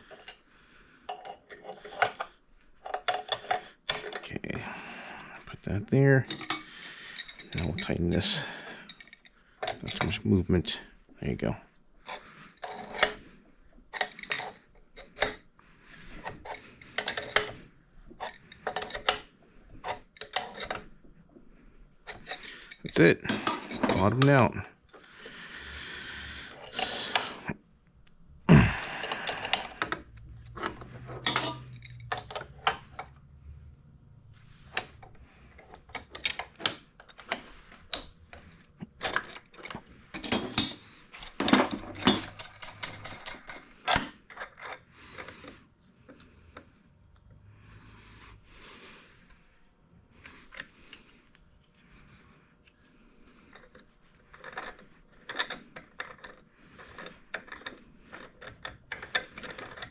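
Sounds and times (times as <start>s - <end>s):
metal tools clinking and clattering: 6.0s - 10.3s, 13.9s - 15.4s, 16.2s - 17.6s, 18.2s - 19.2s, 22.1s - 24.5s, 29.0s - 33.2s, 34.6s - 45.4s, 53.5s - 59.9s.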